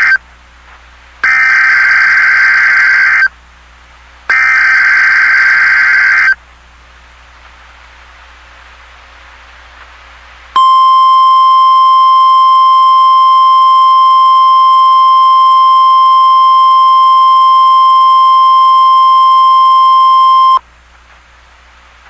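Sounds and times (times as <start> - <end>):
loud buzzy alert beep: 1.2 - 3.3, 4.3 - 6.4.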